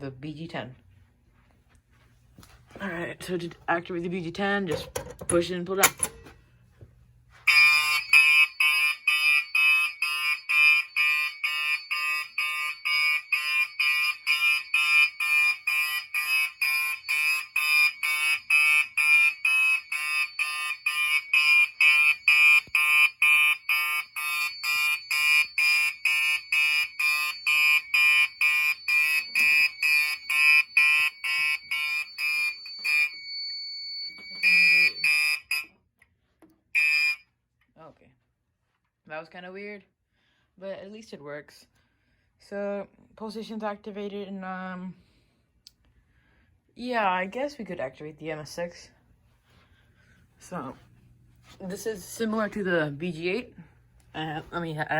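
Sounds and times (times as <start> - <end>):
fire alarm horn pulsing: 7.4 - 35.7, 36.8 - 37.3.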